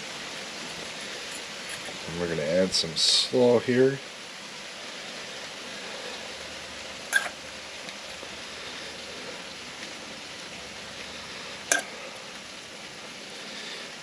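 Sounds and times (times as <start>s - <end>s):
griddle sizzling: 0.0s - 14.0s.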